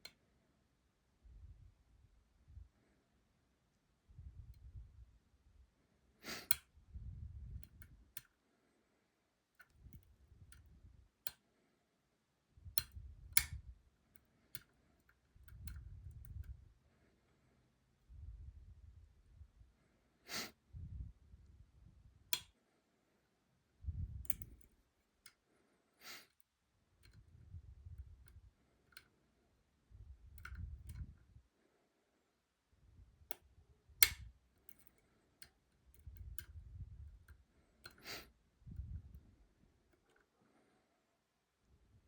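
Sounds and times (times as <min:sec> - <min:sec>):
lock picking clicks: 0:12.8 - 0:13.6, 0:34.0 - 0:36.6.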